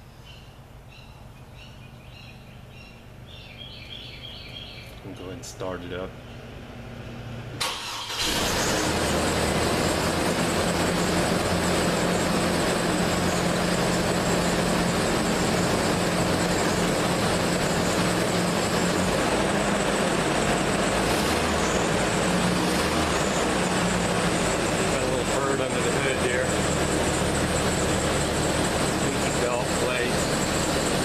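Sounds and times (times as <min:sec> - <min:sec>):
pickup engine cranking and idling: 0:07.6 - 0:31.0.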